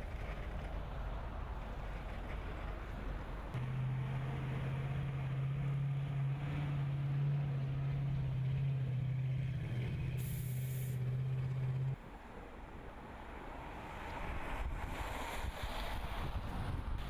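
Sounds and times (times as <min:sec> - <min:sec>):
brief hiss: 0:10.2 - 0:11.0.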